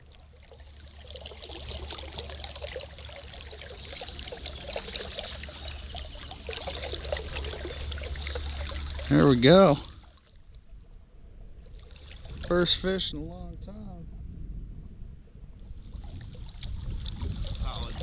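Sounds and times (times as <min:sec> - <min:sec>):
creek water splashing: 0:00.0 - 0:10.8, 0:11.4 - 0:13.0
low steady rumble: 0:00.0 - 0:18.0.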